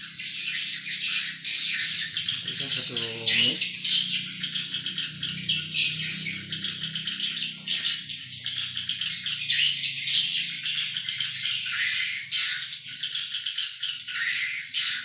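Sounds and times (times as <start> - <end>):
swiftlets chirping and twittering: 0.0 - 15.0.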